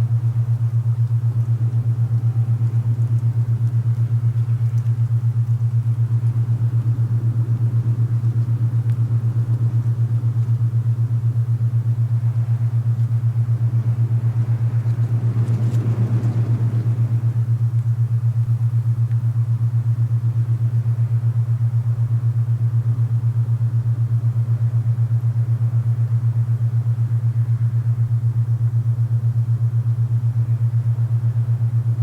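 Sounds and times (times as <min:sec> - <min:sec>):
low throbbing tone: 0:00.0 - 0:32.0
rushing wind: 0:13.2 - 0:17.6.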